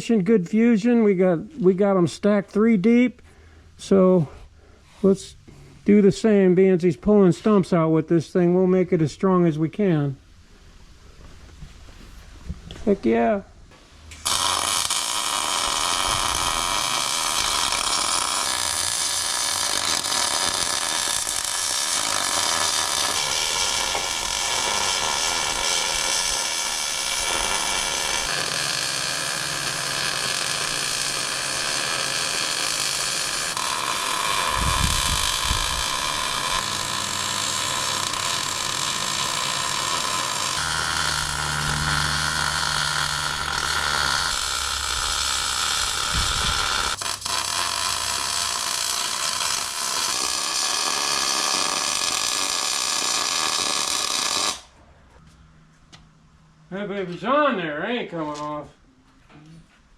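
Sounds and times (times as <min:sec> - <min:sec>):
welder arc crackling hiss: 0:13.9 - 0:54.7.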